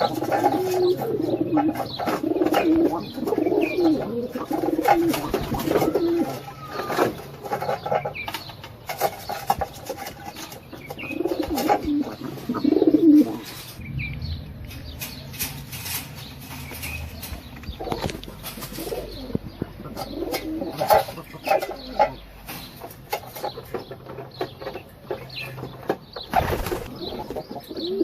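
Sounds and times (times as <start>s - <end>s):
pigeons cooing: 0.0s - 28.0s
wings flapping: 26.3s - 27.6s.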